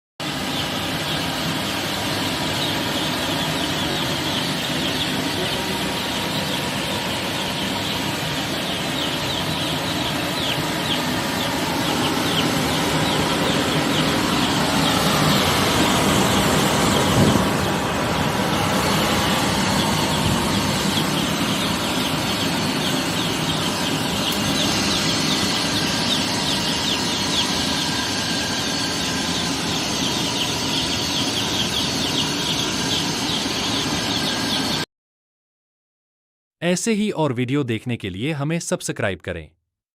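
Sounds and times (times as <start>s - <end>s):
chicks peeping: 0.2s - 34.8s
steady rushing noise: 0.8s - 30.4s.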